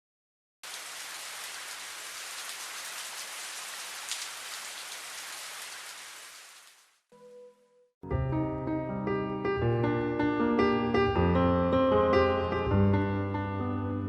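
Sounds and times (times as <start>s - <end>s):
steady rain falling: 0.6s - 6.9s.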